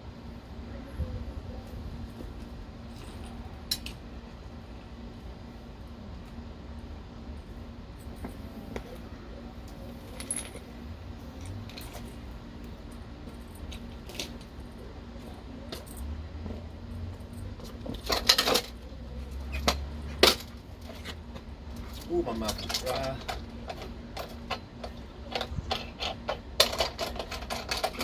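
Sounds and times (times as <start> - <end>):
low steady rumble: 0.0 - 28.0
metallic clinks and rattles: 2.1 - 4.0, 10.0 - 16.2, 16.9 - 28.0
metallic clatter: 17.6 - 18.8, 19.4 - 28.0.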